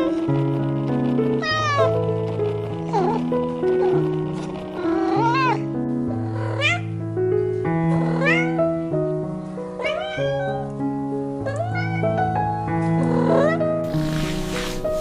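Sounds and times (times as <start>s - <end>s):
background music with piano notes: 0.0s - 15.0s
cat meowing: 8.1s - 8.6s, 9.8s - 10.6s.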